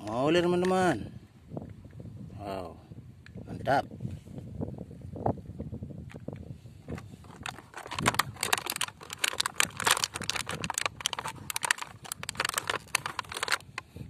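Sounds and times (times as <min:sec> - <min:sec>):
plastic packaging crinkling: 0:07.2 - 0:13.8.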